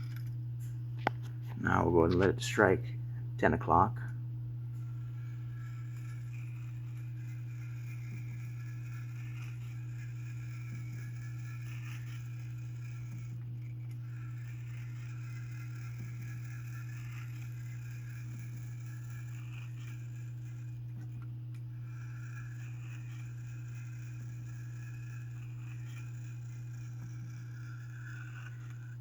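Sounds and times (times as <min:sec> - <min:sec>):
loud low hum: 0:00.0 - 0:06.2.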